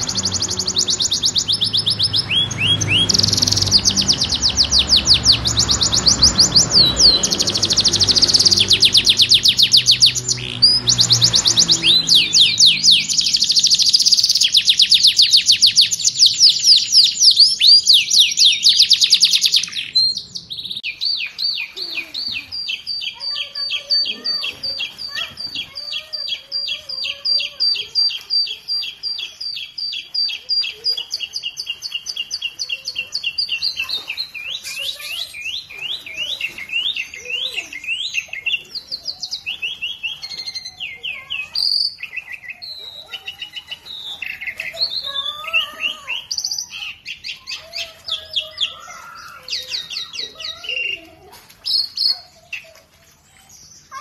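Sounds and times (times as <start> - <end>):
songbird singing: 0.0 - 54.0.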